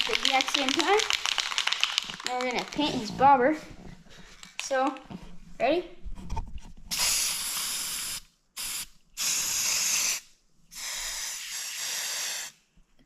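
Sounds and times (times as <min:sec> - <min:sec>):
spray paint cans hissing: 0:00.0 - 0:02.8, 0:06.9 - 0:12.6.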